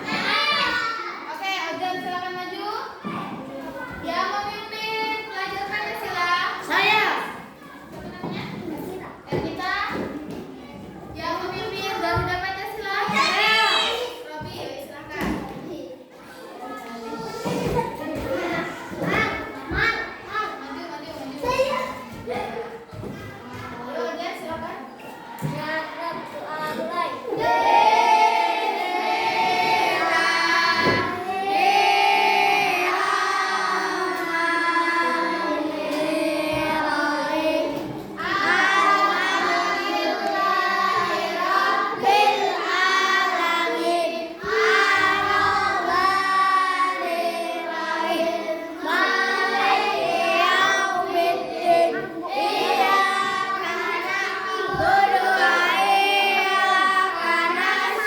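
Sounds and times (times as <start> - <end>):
children singing in unison: 25.2 - 58.0.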